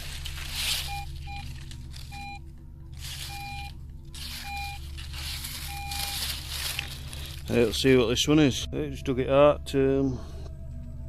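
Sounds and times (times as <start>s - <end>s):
scuffing and rustling: 0.0s - 2.4s, 3.0s - 8.0s
metal detector beeps: 0.6s - 2.4s, 3.0s - 7.8s.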